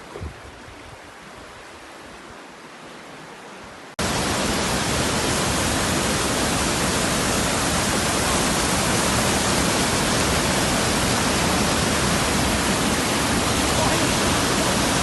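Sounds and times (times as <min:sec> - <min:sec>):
river water rushing over waterfall: 0:02.4 - 0:15.0.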